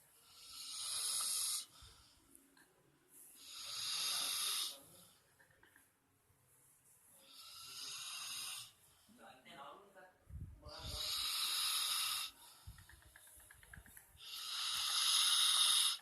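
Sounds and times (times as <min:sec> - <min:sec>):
person snoring: 0:00.2 - 0:01.7, 0:03.4 - 0:04.9, 0:07.2 - 0:08.8, 0:10.7 - 0:12.4, 0:14.2 - 0:16.0.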